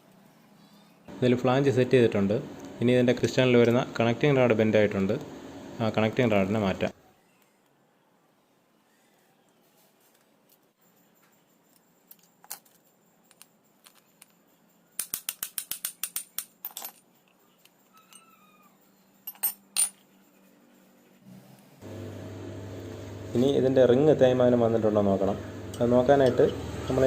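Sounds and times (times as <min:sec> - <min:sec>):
metal tools clicking and clinking: 0:11.7 - 0:18.6, 0:19.2 - 0:20.1.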